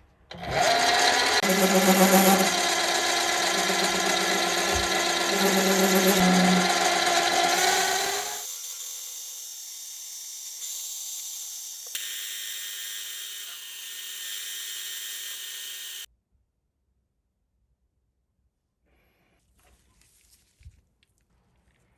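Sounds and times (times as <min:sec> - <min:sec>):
mini lathe machining: 0:00.3 - 0:16.1.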